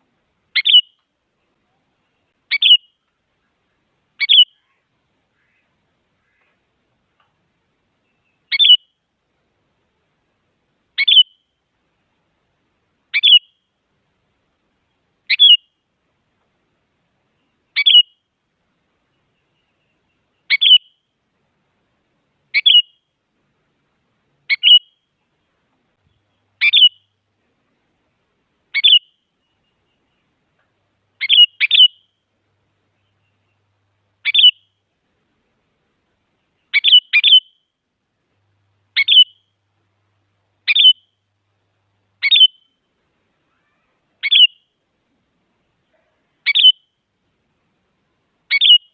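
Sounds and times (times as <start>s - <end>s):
bulbul short sharp calls: 2.5s - 3.0s, 4.2s - 6.6s, 15.3s - 15.7s, 17.8s - 18.2s, 22.5s - 23.0s, 24.5s - 25.1s, 26.3s - 27.1s, 31.2s - 32.2s, 34.2s - 34.8s, 36.7s - 37.7s, 39.0s - 39.5s, 40.7s - 41.2s, 42.2s - 42.8s, 43.4s - 44.7s, 45.9s - 46.9s, 48.5s - 48.9s.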